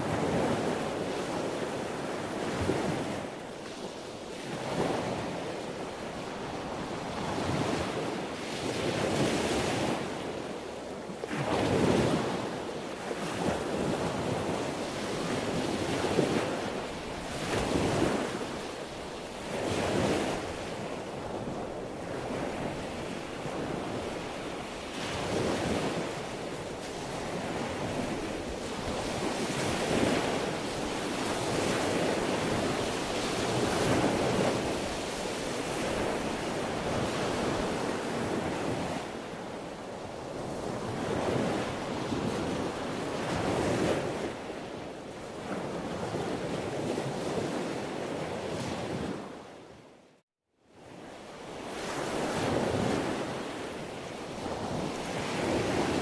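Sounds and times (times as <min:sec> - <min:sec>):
sea waves breaking: 0:11.3 - 0:44.6, 0:51.6 - 0:56.0.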